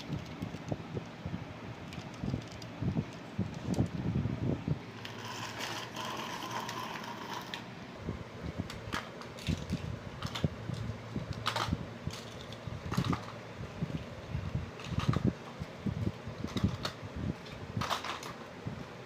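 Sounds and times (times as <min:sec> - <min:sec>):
plastic toys clicking and rattling: 0:00.0 - 0:03.9, 0:05.0 - 0:07.7, 0:08.7 - 0:13.4, 0:14.8 - 0:15.7, 0:16.4 - 0:18.4
steady low hum: 0:00.0 - 0:19.0.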